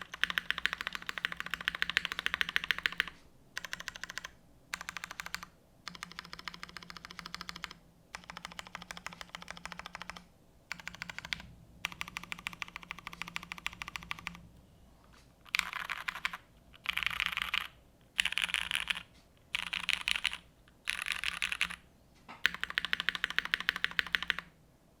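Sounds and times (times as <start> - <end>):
mechanical keyboard typing: 0.0 - 14.4, 15.5 - 21.8, 22.4 - 24.5.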